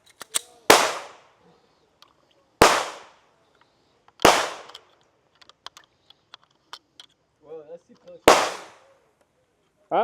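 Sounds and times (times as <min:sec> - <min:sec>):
gunshots with echoing tail: 0:00.7 - 0:01.2, 0:02.6 - 0:03.2, 0:04.2 - 0:04.7, 0:08.3 - 0:08.8.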